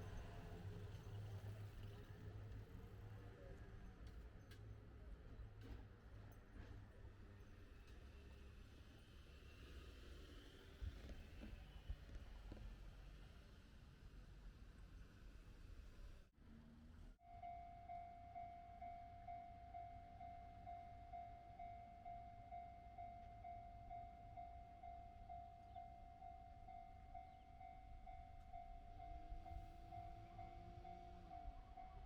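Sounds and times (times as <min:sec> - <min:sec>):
level-crossing warning bell: 0:17.2 - 0:32.0.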